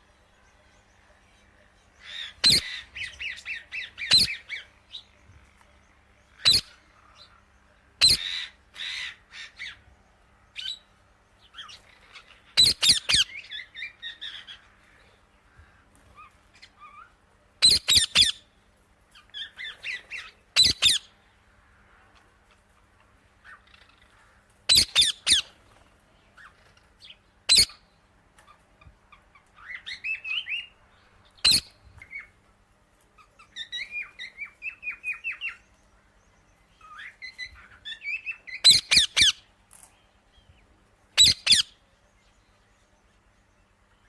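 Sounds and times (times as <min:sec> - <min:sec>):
parrot chattering chirps: 0:06.4 - 0:06.7, 0:12.6 - 0:13.4, 0:24.7 - 0:25.5, 0:38.0 - 0:39.4, 0:41.2 - 0:41.8.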